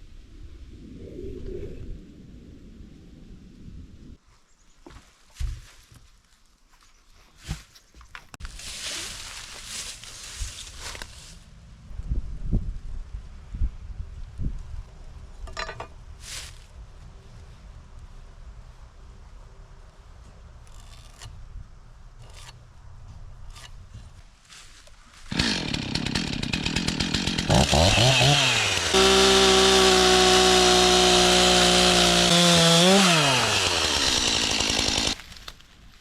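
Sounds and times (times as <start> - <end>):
chainsaw starting and revving: 25.3 - 35.2.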